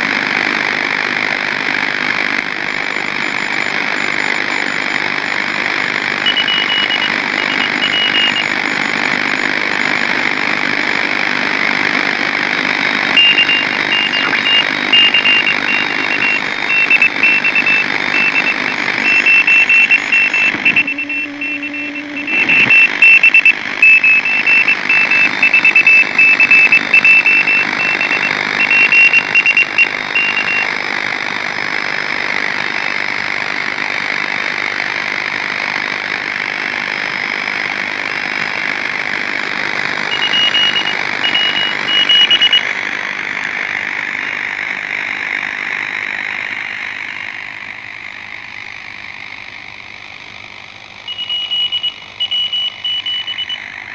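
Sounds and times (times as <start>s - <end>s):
radio band hiss: 1.2s - 33.1s, 38.4s - 48.8s
morse code beeping: 2.6s - 11.1s, 13.0s - 30.7s, 40.1s - 42.7s, 51.1s - 53.6s
low hum: 12.9s - 30.6s.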